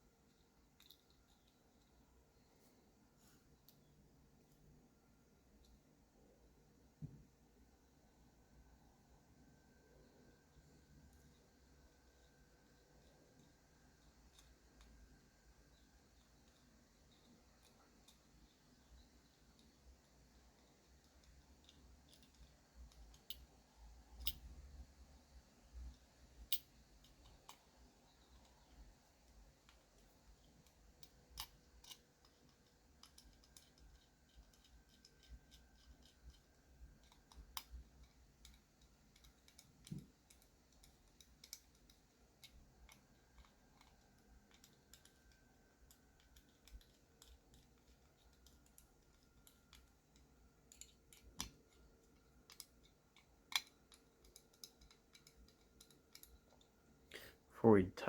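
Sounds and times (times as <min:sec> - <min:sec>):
clicks and taps of metal parts: 0:29.7 - 0:56.7.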